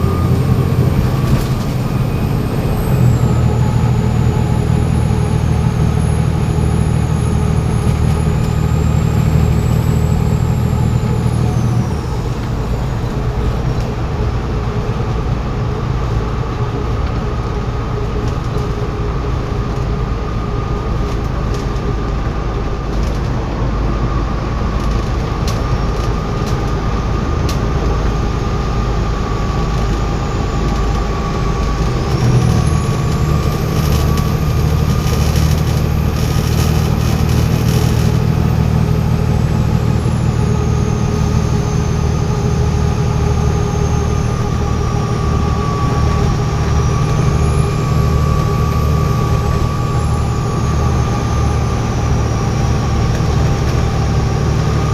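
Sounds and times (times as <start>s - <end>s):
high turbocharger whistle: 0.0s - 12.8s, 28.2s - 54.9s
bus diesel engine running: 0.0s - 54.9s.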